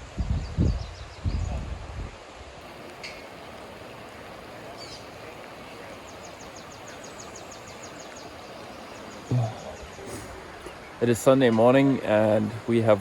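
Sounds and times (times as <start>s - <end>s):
outdoor background hiss: 0.0s - 13.0s
bird trilling: 2.7s - 10.1s.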